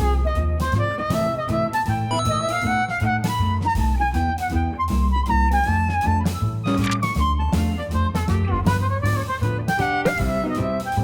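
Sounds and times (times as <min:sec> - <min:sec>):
upbeat jazzy instrumental music: 0:00.0 - 0:11.0.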